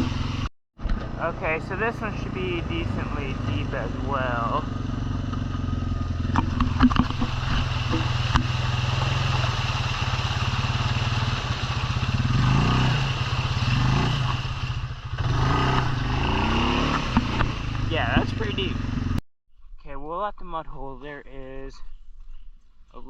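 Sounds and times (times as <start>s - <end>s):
atv engine revving: 0.0s - 19.2s.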